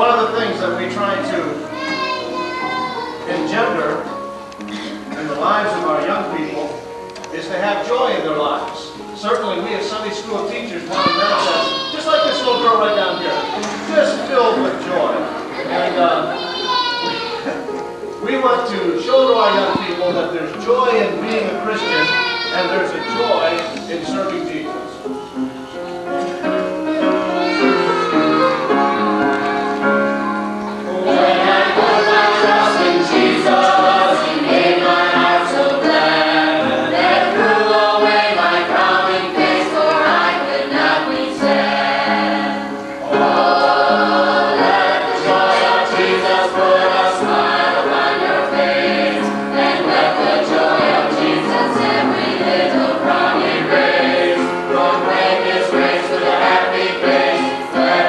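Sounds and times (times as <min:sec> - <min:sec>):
small choir singing: 0:09.8 - 0:17.7, 0:26.4 - 0:58.0.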